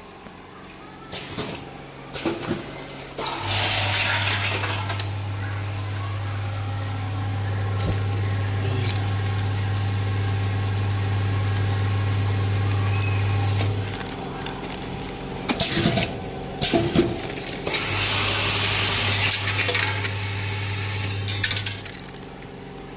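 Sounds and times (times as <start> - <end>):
vibratory feeder buzzing: 3.1 - 15.5.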